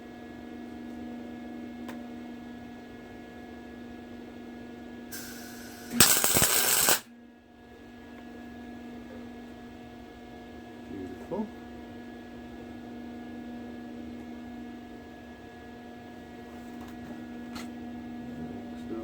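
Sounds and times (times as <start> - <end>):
electrical hum: 5.1 - 7.0
crackling welding arc: 5.2 - 7.0
short hiss: 5.2 - 7.0.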